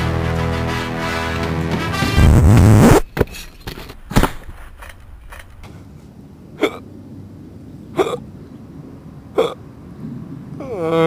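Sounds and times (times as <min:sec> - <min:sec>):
man hiccupping: 0:06.6 - 0:06.8, 0:08.0 - 0:08.2, 0:09.4 - 0:09.6, 0:10.6 - 0:11.0.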